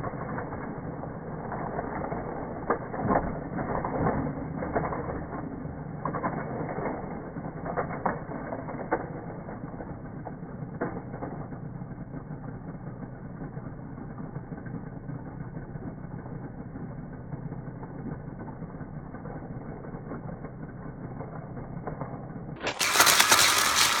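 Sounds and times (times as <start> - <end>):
toy cars clicking and rattling: 22.6 - 24.0.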